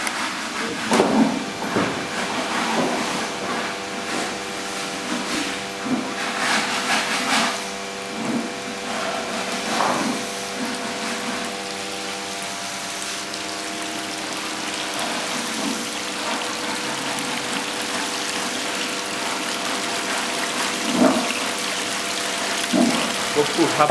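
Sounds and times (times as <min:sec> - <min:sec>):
electric water pump humming: 0:00.0 - 0:23.9
water running and splashing: 0:08.1 - 0:23.9.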